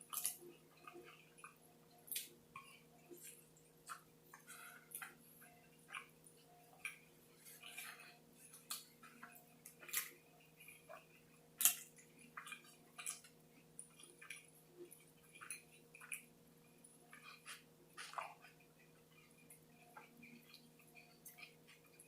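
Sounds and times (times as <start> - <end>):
wet mouth chewing: 6.8 - 16.3, 17.1 - 22.0.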